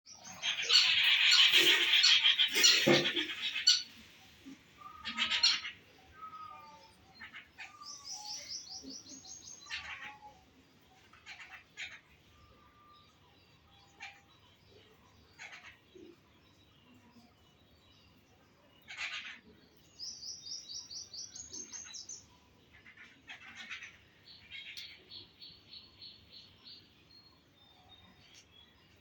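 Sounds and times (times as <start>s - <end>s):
parrots screeching and squawking: 0.3s - 4.0s, 4.9s - 8.3s, 9.6s - 10.3s, 11.2s - 12.1s, 18.9s - 19.4s, 22.8s - 24.0s.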